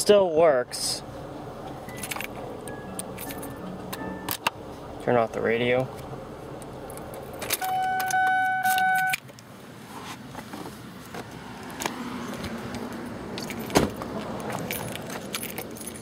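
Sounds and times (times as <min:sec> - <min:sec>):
keys jingling: 0:01.9 - 0:04.4, 0:06.9 - 0:09.3, 0:13.3 - 0:16.0
electronic beep: 0:07.6 - 0:09.2.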